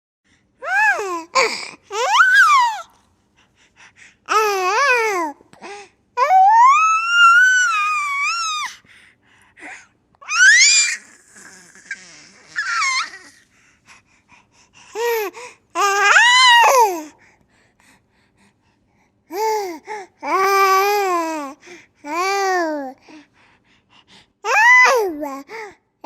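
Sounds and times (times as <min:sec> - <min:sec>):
baby squealing with glee: 0:01.9 - 0:02.9, 0:06.2 - 0:08.7, 0:10.2 - 0:13.4.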